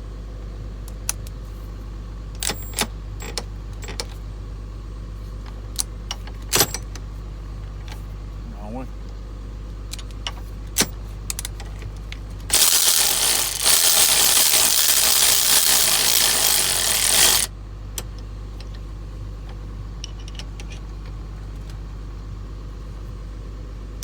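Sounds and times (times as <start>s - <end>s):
small tools clicking and tapping: 12.5s - 17.5s.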